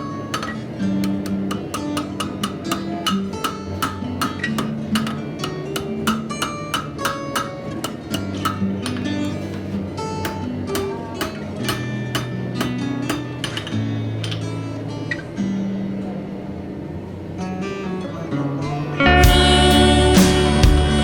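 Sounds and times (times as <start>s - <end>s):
instrumental music: 0.0s - 15.5s, 18.6s - 21.0s
ringing percussive hits: 0.3s - 9.6s.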